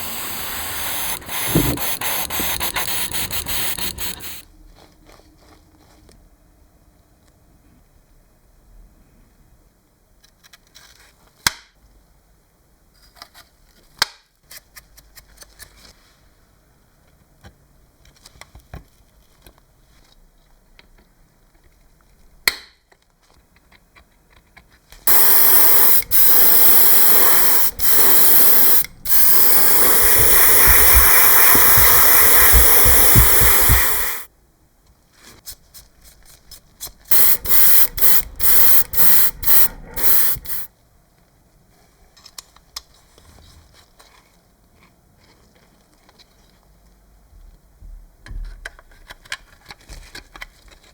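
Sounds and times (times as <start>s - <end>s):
pressurised spray hissing: 0.0s - 4.4s, 25.1s - 34.3s, 37.1s - 40.7s.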